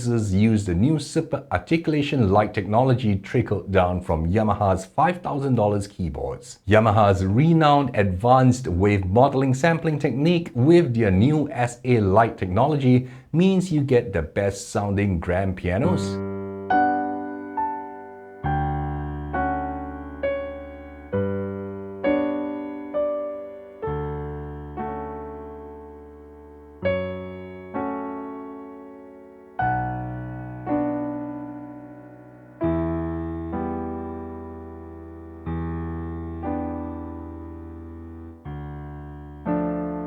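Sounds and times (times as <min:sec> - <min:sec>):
piano chords over bass notes: 0:15.7 - 0:40.0.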